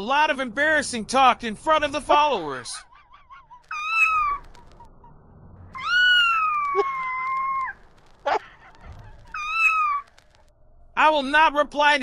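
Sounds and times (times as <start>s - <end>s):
cat chirp: 3.5s - 4.8s, 5.8s - 10.2s
cat meowing: 3.7s - 4.4s, 5.8s - 8.4s, 9.2s - 10.1s.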